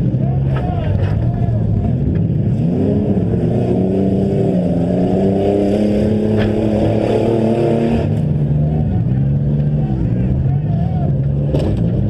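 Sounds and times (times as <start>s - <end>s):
car engine at high revs: 0.0s - 12.0s.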